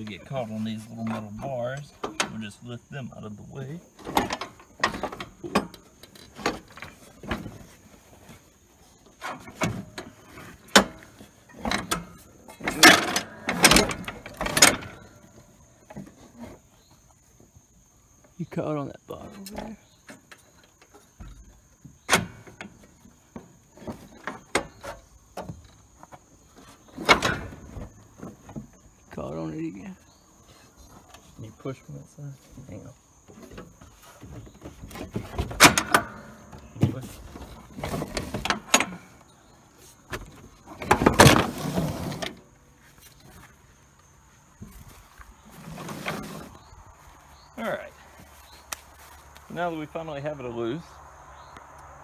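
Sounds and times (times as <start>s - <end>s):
metal deck scraping and clunking: 0.0s - 31.8s, 32.4s - 51.5s
mower deck scraping on metal: 4.0s - 16.9s, 33.3s - 43.5s, 44.6s - 46.8s.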